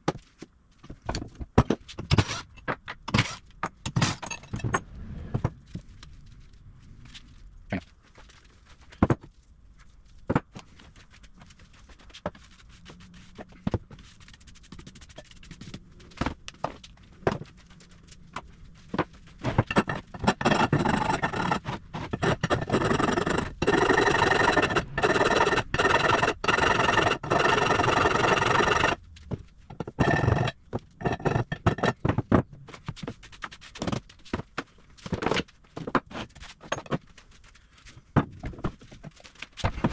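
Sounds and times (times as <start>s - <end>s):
metal scraping on metal: 19.4s - 29.0s, 29.7s - 32.0s.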